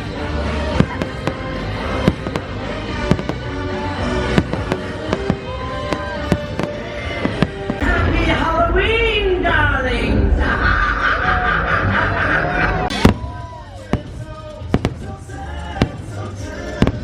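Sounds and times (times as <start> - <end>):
fireworks bangs: 0.0 - 8.1, 12.9 - 17.0
music: 0.0 - 17.0.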